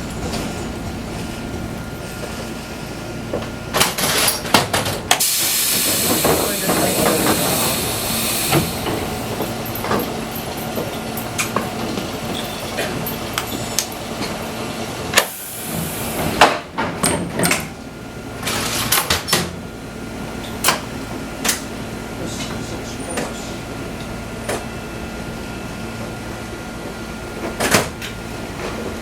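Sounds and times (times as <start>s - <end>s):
railcar interior hum: 0.0s - 29.0s
air hiss: 5.2s - 8.9s.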